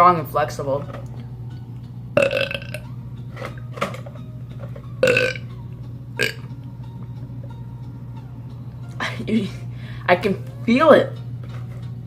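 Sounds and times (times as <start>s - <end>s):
boy burping: 2.2s - 2.8s, 5.0s - 5.4s, 6.2s - 6.4s.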